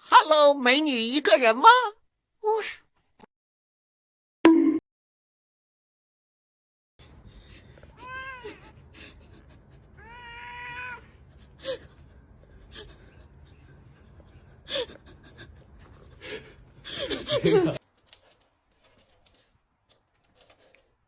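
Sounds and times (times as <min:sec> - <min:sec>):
pet animal crying: 0:07.9 - 0:08.9, 0:09.9 - 0:11.3.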